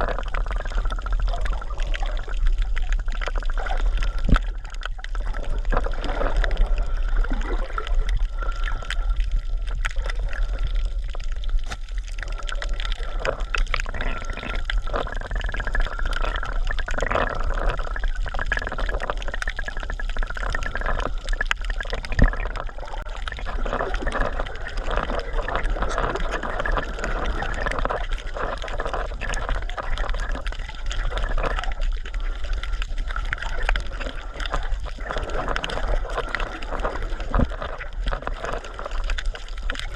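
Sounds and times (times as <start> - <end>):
water sloshing and gurgling: 0.0 - 39.9.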